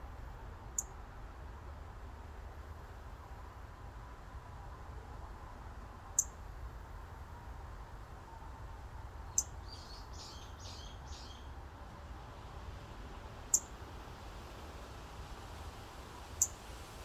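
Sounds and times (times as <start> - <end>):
songbird chirping: 9.3 - 11.6.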